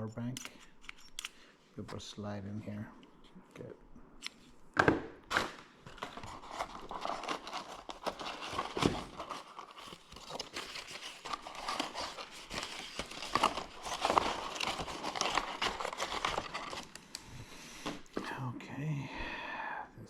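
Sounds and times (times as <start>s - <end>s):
plastic packaging crinkling: 5.3s - 17.2s.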